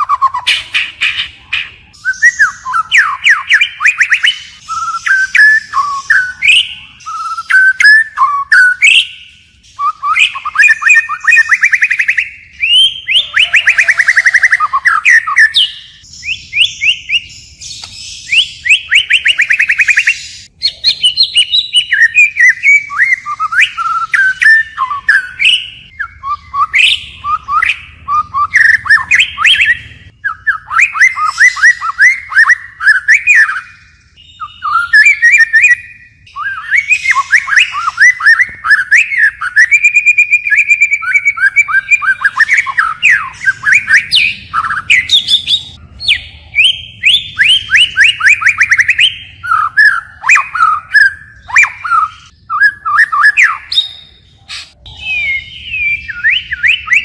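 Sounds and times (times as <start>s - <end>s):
bird singing varied song: 0.0s - 57.0s.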